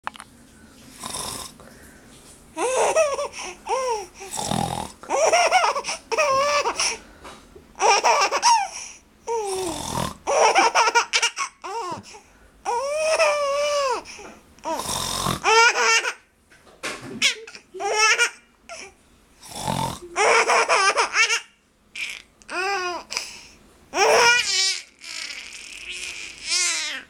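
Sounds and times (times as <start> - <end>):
adult making snoring sounds: 1.0 - 1.6, 3.8 - 5.2, 9.3 - 10.4, 14.6 - 15.6, 19.4 - 20.3.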